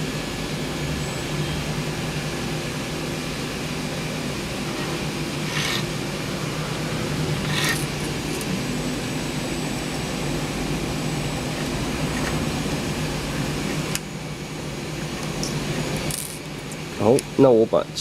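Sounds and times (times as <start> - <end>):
fan hum: 0.0 - 18.0
small parts clicking and rustling: 15.4 - 16.5.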